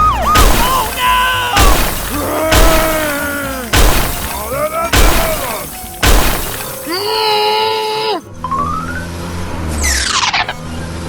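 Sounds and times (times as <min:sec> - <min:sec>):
loud crashing shattering impacts: 0:00.2 - 0:06.9.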